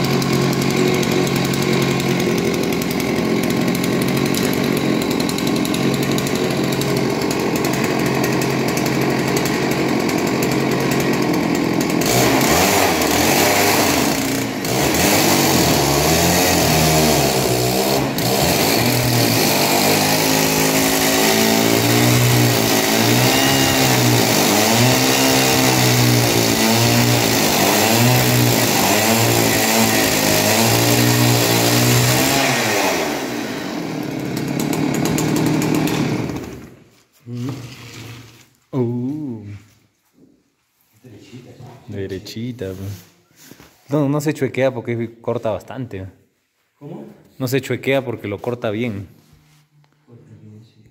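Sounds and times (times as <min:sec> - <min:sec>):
chainsaw cutting a log: 0:00.0 - 0:38.4.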